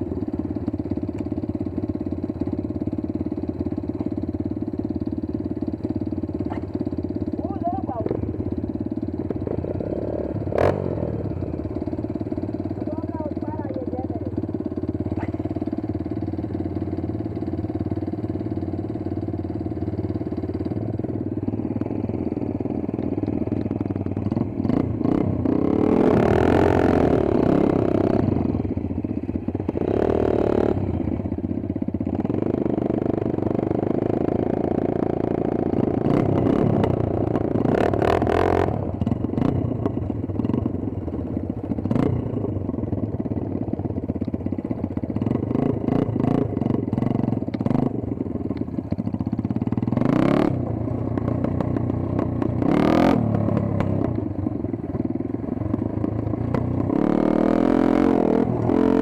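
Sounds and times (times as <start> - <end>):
dirt bike engine revving: 9.3 - 14.2, 24.6 - 28.3, 29.7 - 31.0, 35.8 - 39.6, 49.9 - 50.6, 52.6 - 53.4, 56.5 - 59.0.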